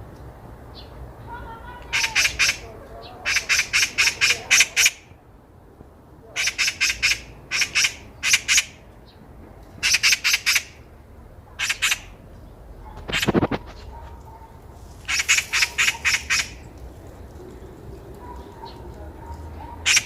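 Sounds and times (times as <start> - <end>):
magpie chattering: 1.9 - 5.1, 6.4 - 8.8, 9.8 - 10.8, 11.6 - 12.2, 13.0 - 13.9, 15.0 - 16.7, 19.8 - 20.0.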